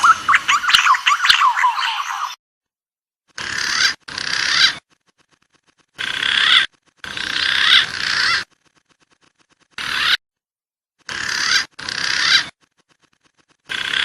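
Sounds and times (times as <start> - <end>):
pigeon calls: 0.0 - 2.4, 3.3 - 4.9, 5.5 - 8.6, 9.7 - 10.2, 11.0 - 14.0.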